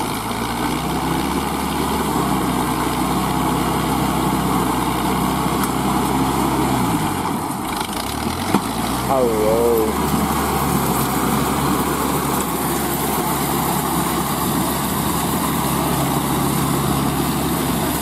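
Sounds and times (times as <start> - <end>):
tractor diesel engine running: 0.0 - 18.0.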